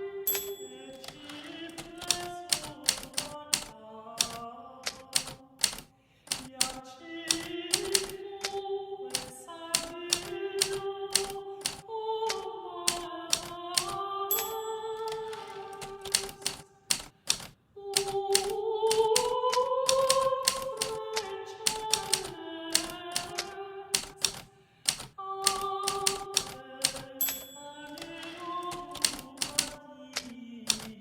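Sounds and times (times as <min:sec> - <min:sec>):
typewriter keys striking: 0:00.3 - 0:31.0.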